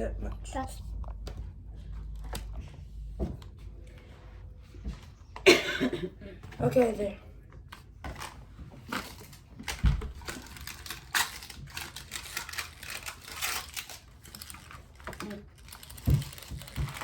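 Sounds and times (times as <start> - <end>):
plastic toy clicking and rattling: 8.9 - 17.0.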